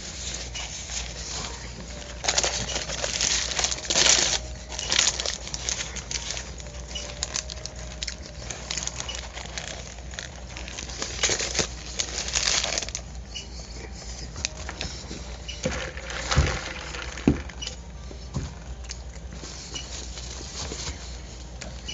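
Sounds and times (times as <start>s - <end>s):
paper wrapper crinkling: 0.0s - 18.1s.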